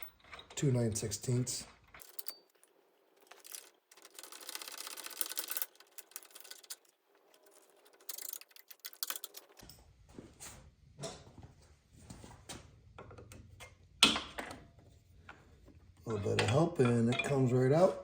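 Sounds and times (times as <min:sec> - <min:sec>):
wrench rapid metallic clicking: 0:03.3 - 0:06.8.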